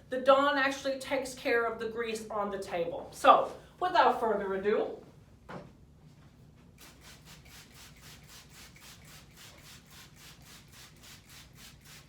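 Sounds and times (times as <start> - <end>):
spray bottle hissing sprays: 6.8 - 12.0.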